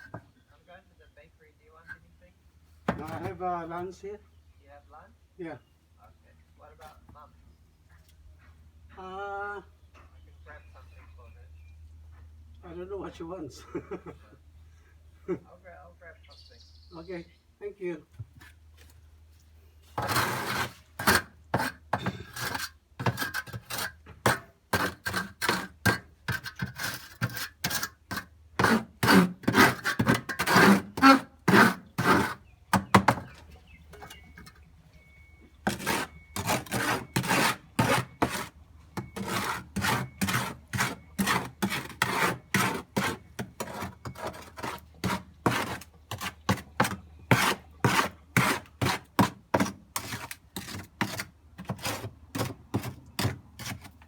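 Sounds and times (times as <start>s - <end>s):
tool scraping wet concrete: 20.0s - 34.6s, 35.6s - 54.0s.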